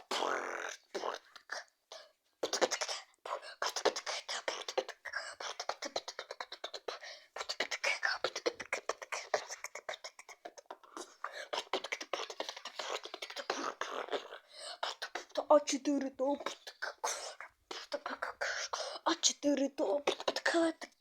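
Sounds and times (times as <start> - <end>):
person beatboxing: 0.0 - 1.7, 2.4 - 15.5.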